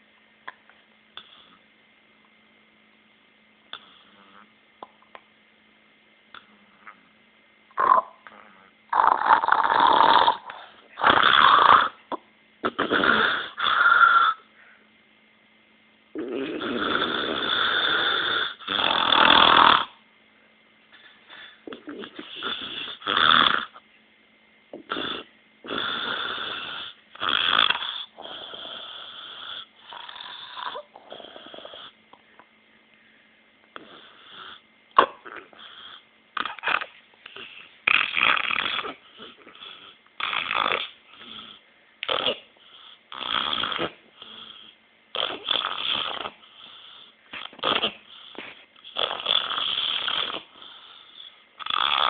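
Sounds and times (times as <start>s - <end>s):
man snoring: 7.8s - 12.0s, 12.6s - 14.4s, 16.2s - 20.0s, 21.7s - 23.8s, 24.8s - 32.0s, 35.3s - 42.4s, 43.1s - 52.0s.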